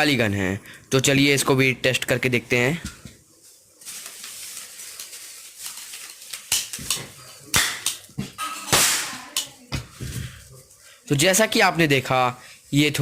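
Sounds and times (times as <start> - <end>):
cap gun cracks: 8.7 - 9.5.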